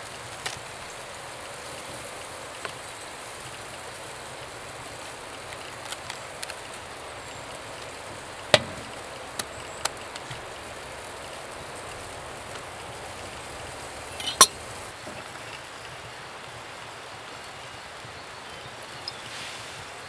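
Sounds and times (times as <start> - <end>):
steady hiss: 0.0 - 20.0
food preparation knocks: 8.6 - 9.0.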